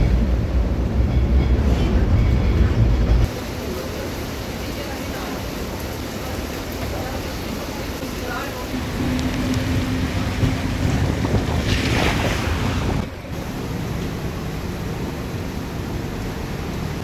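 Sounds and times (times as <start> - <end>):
heavy rain: 3.2 - 17.0
running water: 3.2 - 17.0
wind buffeting microphone: 7.9 - 17.0.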